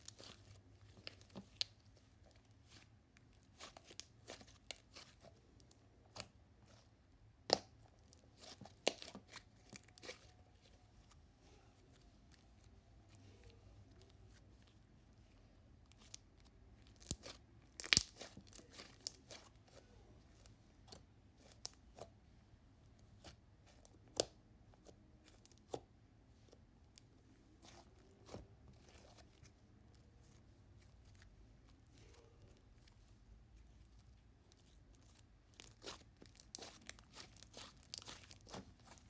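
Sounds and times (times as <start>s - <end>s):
slime squishing and popping: 16.8s - 19.5s, 35.5s - 39.0s.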